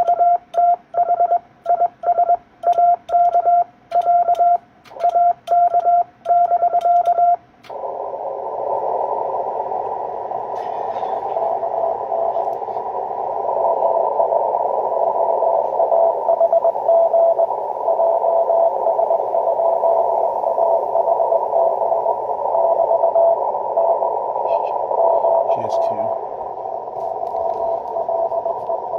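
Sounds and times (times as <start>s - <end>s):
morse code sidetone beeps: 0.0s - 7.4s, 15.1s - 24.0s, 27.3s - 28.9s
weak morse code signal: 0.0s - 7.4s, 10.4s - 13.0s, 13.9s - 28.9s
radio receiver hiss: 7.0s - 28.9s.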